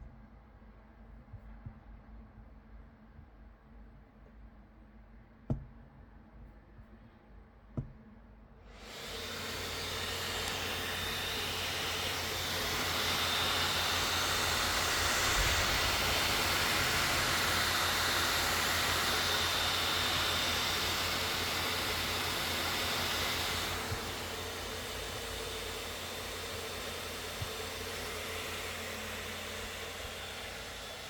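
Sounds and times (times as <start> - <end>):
laptop cooling fans rushing: 8.7 - 31.0
click: 10.4 - 10.7.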